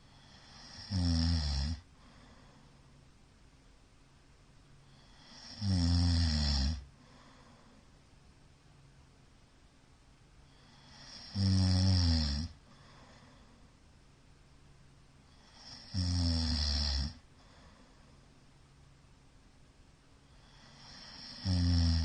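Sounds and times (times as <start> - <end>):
man snoring loudly: 0.1 - 1.8, 5.0 - 6.9, 10.6 - 12.6, 15.4 - 17.2, 20.5 - 22.0
faint breath: 1.9 - 3.1, 6.9 - 8.1, 10.4 - 11.3, 12.6 - 13.9, 17.3 - 18.5.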